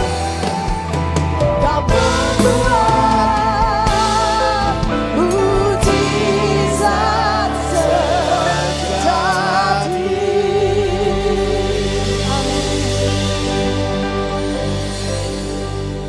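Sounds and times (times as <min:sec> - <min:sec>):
band playing chords and bass: 0:00.0 - 0:16.0
person singing with vibrato: 0:01.6 - 0:13.8.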